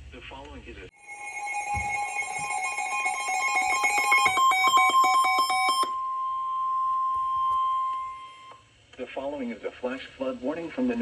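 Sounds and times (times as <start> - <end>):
fast pulsing beep: 1.0 - 8.6
steady high alert tones: 1.0 - 8.6.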